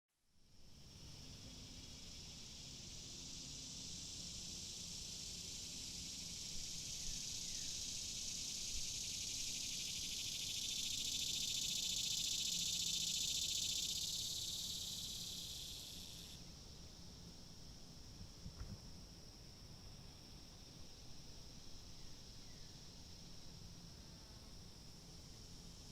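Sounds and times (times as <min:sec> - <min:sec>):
cicadas buzzing: 0:00.6 - 0:18.0.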